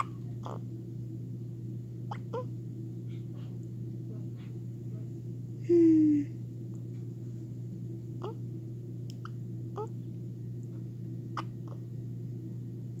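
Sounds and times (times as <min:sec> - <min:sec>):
hiccups: 0:00.0 - 0:00.6, 0:02.1 - 0:02.5, 0:11.4 - 0:11.8
steady low hum: 0:00.0 - 0:13.0.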